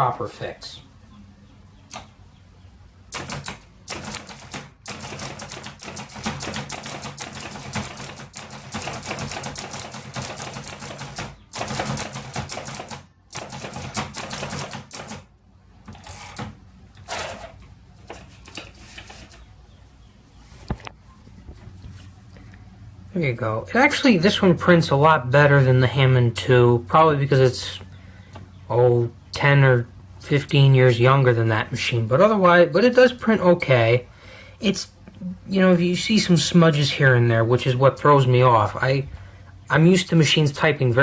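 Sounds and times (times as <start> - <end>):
typewriter keystrokes: 3.1 - 15.2.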